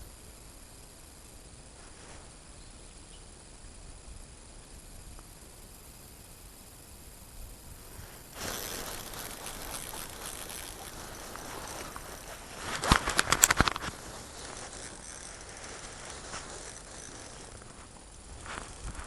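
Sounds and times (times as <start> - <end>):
fishing reel whirring: 7.8 - 19.0
ratchet clicks: 8.4 - 18.8.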